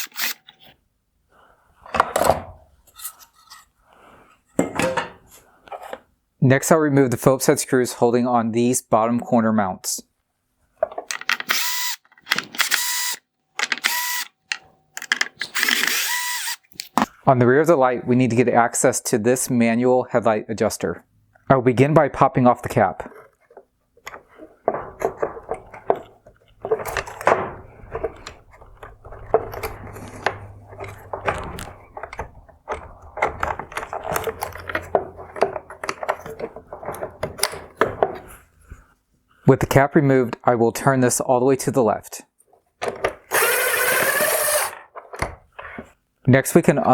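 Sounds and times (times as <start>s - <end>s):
electric screwdriver whirring: 0.0s - 0.4s, 11.4s - 14.6s, 15.3s - 17.1s, 43.3s - 44.8s
clicks of bit and screws: 0.0s - 0.7s, 11.0s - 17.1s, 42.8s - 45.2s
hard plastic clicks and scrapes: 0.0s - 0.8s, 10.9s - 17.1s, 23.0s - 38.8s.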